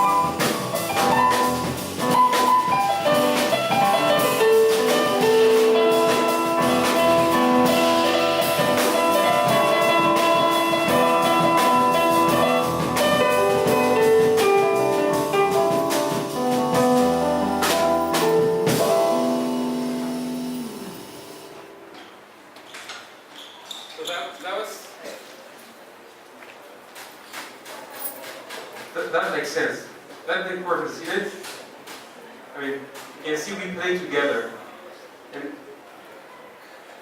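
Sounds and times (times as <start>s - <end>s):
drum kit with cymbal hits: 0.0s - 22.2s
piano improvising melody: 0.0s - 22.5s.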